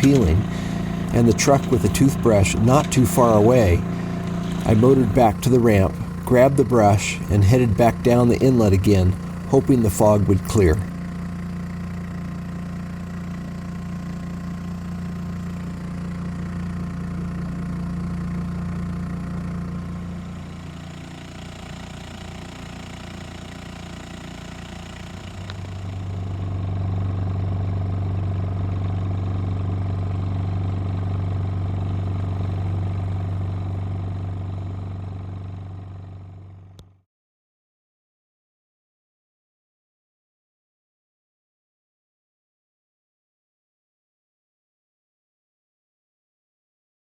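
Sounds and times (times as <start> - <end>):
outboard motor running: 0.0 - 36.9.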